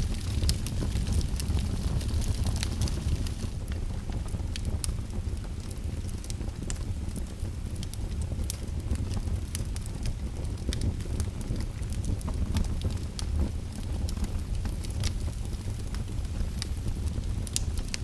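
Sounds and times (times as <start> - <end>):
fire crackling: 0.0 - 18.0.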